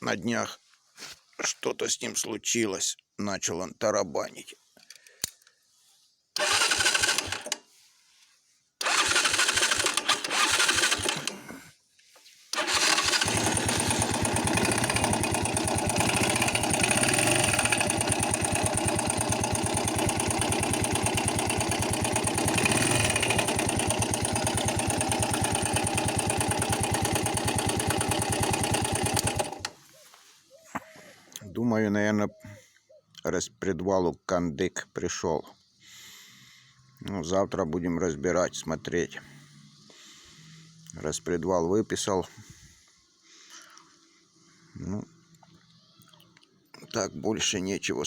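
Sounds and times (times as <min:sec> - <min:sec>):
motorcycle engine cranking: 0:06.4 - 0:07.6, 0:08.8 - 0:11.6, 0:12.6 - 0:29.8.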